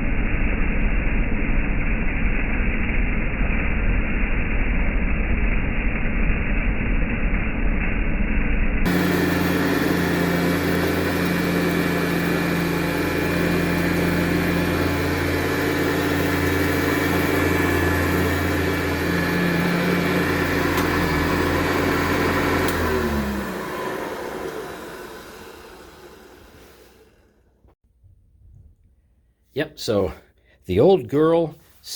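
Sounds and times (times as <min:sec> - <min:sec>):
motor winding down: 0:08.9 - 0:27.7
vacuum cleaner motor hum: 0:08.9 - 0:27.8.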